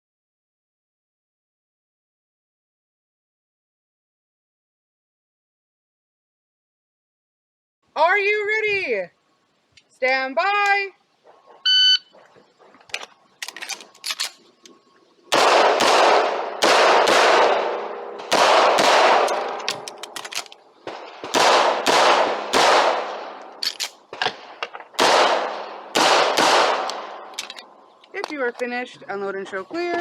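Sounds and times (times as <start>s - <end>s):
electronic timer beep: 11.6s - 12.1s
handgun shots: 15.3s - 20.5s, 21.2s - 24.0s, 25.0s - 27.1s.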